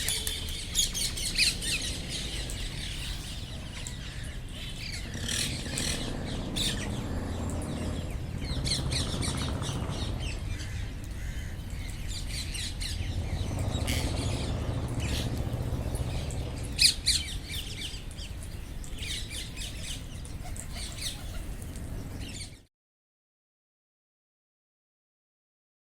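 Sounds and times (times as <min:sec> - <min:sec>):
low steady rumble: 0:04.9 - 0:17.4.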